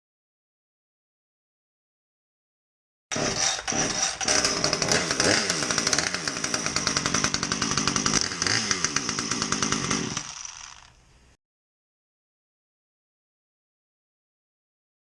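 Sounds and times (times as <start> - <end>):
chainsaw engine revving: 3.1 - 11.0.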